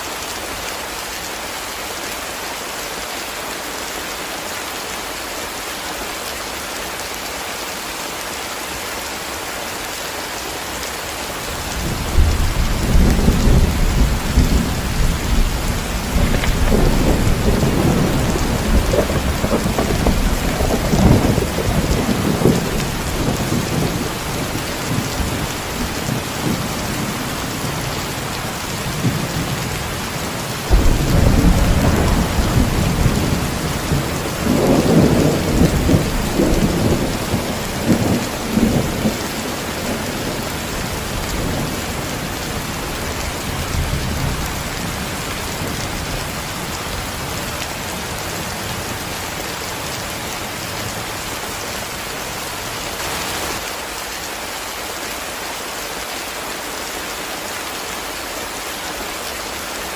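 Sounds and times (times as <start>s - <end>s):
heavy rain hissing: 0.0s - 59.9s
thunder rumble: 11.6s - 41.8s.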